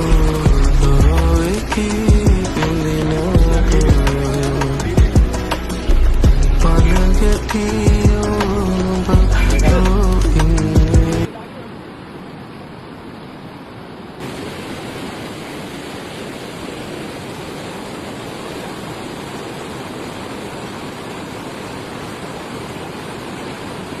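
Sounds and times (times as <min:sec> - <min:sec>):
water rushing over spillway: 0:00.0 - 0:24.0.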